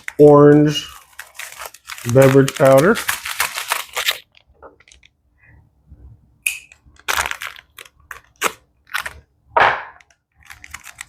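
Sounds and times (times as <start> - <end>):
powder packet crinkling: 0.0 - 5.2, 6.9 - 9.2, 9.9 - 11.0.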